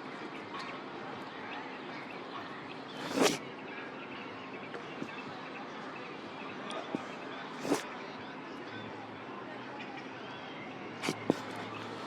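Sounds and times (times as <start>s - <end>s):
outdoor background noise: 0.0s - 12.0s.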